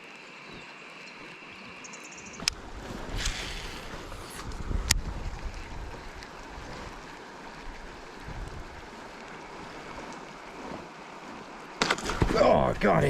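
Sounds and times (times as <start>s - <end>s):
water noise: 0.0s - 13.0s
wind noise: 2.4s - 10.0s
fish striking water: 11.8s - 12.7s.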